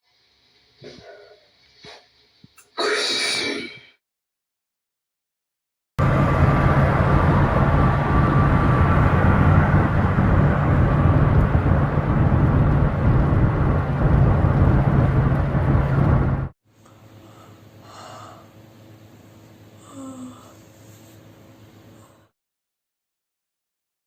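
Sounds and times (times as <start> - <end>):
machine drone: 6.0 - 22.3.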